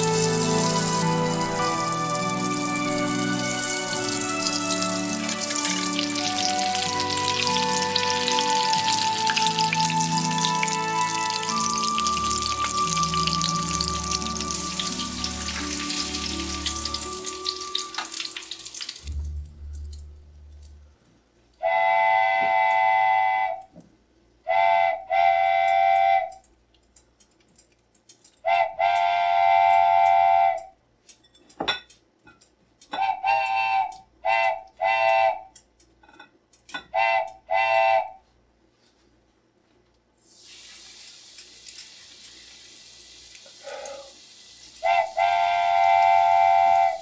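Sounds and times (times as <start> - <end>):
hot oil sizzling: 0.0 - 20.0, 40.3 - 47.0
whistle-like melody with bass: 0.0 - 21.0, 45.0 - 47.0.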